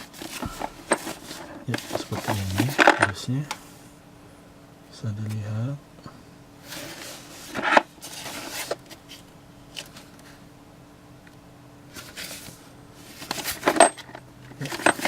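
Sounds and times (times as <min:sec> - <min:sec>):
packaging rustling and clatter: 0:00.0 - 0:03.1, 0:06.7 - 0:09.2, 0:12.0 - 0:15.0.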